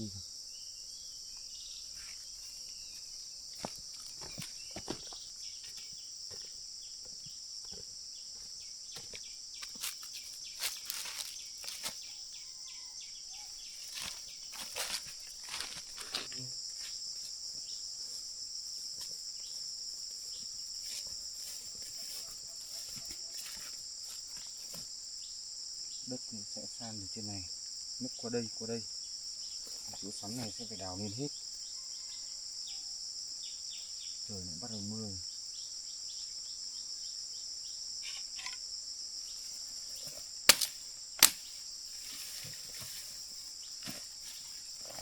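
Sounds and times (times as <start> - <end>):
crickets and insects chirping: 0.0 - 45.0
knocks and snaps: 40.5 - 41.5.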